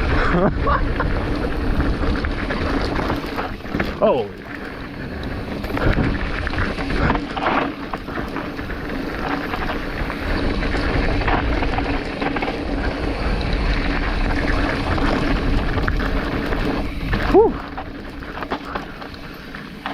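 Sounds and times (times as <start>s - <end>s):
wind rushing over microphone: 0.0s - 19.2s
bike rattling over bumps: 0.0s - 19.9s
bike tyres rumbling on dirt: 0.0s - 19.9s.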